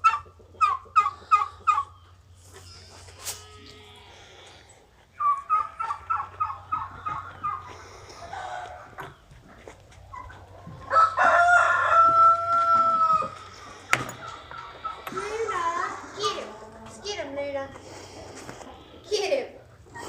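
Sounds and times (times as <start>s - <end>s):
chickens clucking: 0.0s - 20.0s
rooster crowing: 8.1s - 9.1s, 10.7s - 15.6s.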